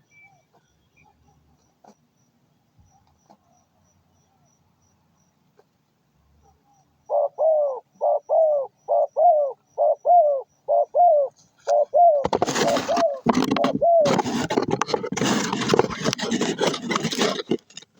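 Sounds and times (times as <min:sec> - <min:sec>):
dove cooing: 0:07.1 - 0:17.5
loud rustling and scraping: 0:12.2 - 0:17.9.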